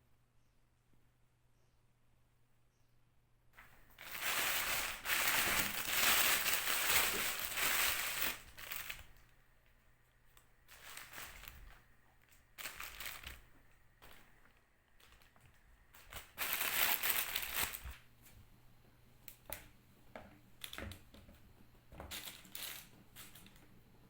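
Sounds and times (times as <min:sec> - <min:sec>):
rustling crinkling handling noise: 0:03.6 - 0:18.4, 0:22.0 - 0:23.7.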